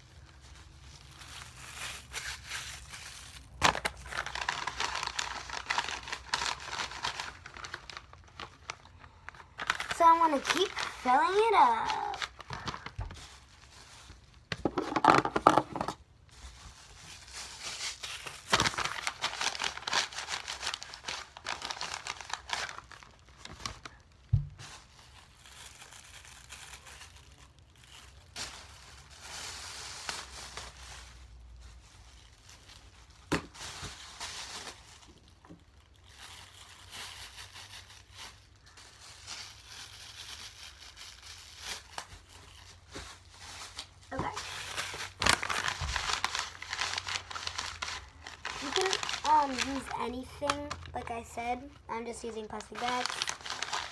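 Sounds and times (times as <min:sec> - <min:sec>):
plastic bag pieces crinkling: 0:00.0 - 0:53.9.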